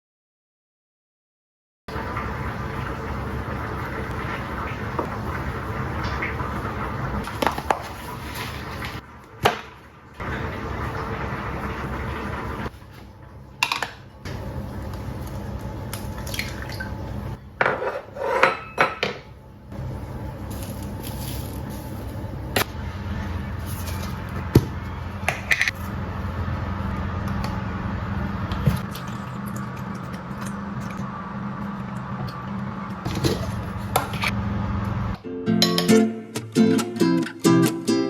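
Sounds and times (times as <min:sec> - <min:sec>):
utensils and dishes clinking: 0:17.6 - 0:19.4, 0:23.8 - 0:25.9.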